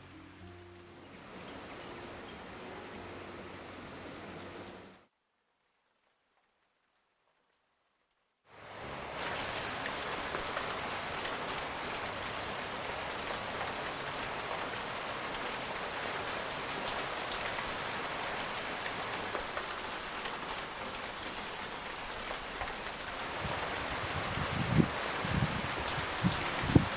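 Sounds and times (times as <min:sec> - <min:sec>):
heavy rain falling: 0:08.5 - 0:26.9.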